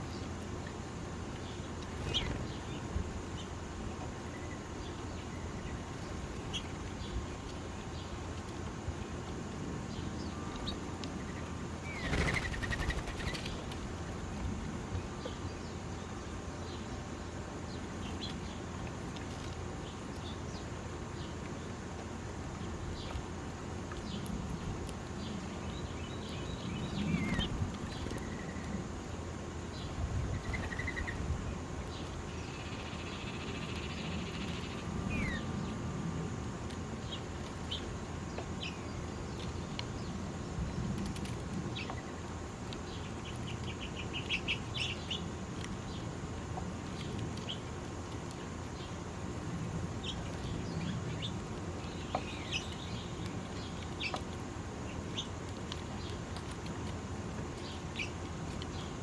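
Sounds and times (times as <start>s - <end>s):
birds chirping: 1.4s - 8.3s, 9.9s - 14.4s, 25.2s - 36.0s, 41.7s - 47.8s, 49.9s - 56.3s
rapid bird twittering: 10.3s - 13.6s, 30.3s - 31.2s, 32.4s - 35.7s.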